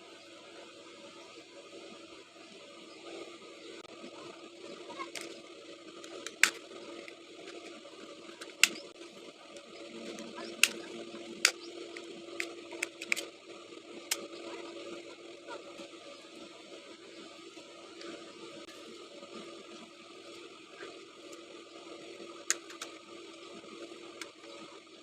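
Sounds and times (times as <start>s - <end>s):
faint steady hum: 0.0s - 25.0s
clicks of small parts and tools: 6.0s - 7.7s, 8.4s - 8.9s, 9.6s - 10.8s, 11.4s - 13.3s, 14.1s - 14.3s, 22.5s - 23.0s.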